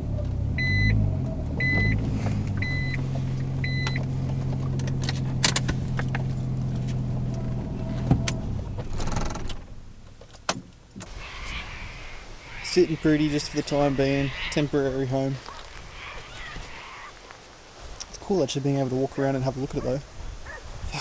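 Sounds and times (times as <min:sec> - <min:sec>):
car engine idling: 0:00.0 - 0:17.4
reversing beeper: 0:00.6 - 0:01.0, 0:01.6 - 0:02.0, 0:02.6 - 0:03.0, 0:03.6 - 0:04.0.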